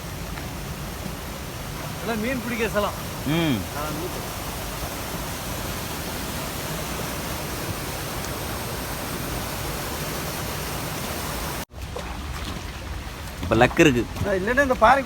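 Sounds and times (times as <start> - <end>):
waterfall rushing: 0.0 - 11.7
quiet rush of water: 0.0 - 15.0.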